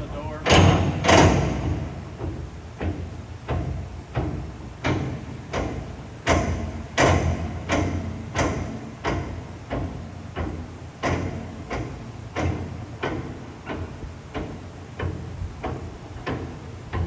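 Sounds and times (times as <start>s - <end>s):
metal door rattling and clanking: 0.0s - 1.8s.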